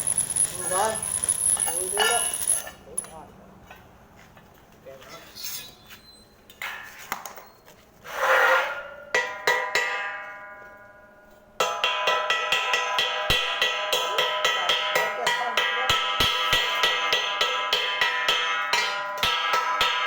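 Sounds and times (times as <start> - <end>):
scattered clicks and knocks: 0.0 - 3.9.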